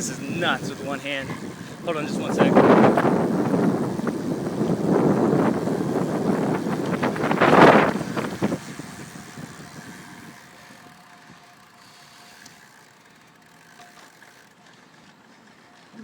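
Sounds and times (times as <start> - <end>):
wind rush on microphone: 0.0 - 10.5.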